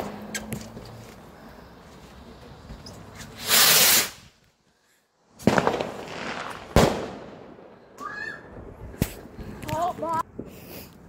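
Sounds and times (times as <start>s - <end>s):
firework bangs: 3.3s - 4.4s, 5.3s - 9.4s
firework crackling: 3.3s - 4.4s, 5.3s - 10.6s
firework hiss: 3.3s - 4.4s.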